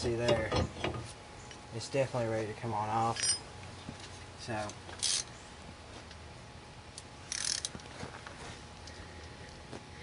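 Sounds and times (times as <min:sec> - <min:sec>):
socket ratchet clicking: 0:07.3 - 0:07.7.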